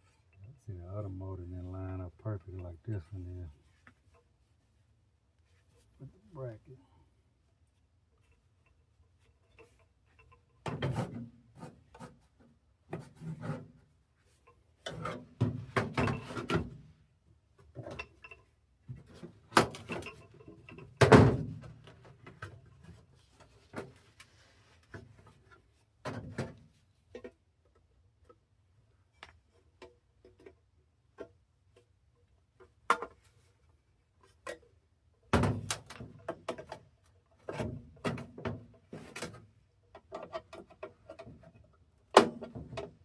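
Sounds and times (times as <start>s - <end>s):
metal clunks and scrapes: 9.4s - 16.8s.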